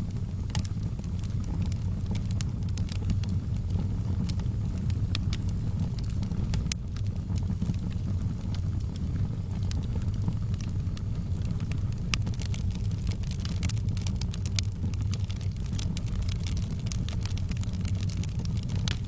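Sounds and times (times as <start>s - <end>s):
low fire rumble: 0.0s - 19.0s
wood fire crackling: 0.0s - 19.0s.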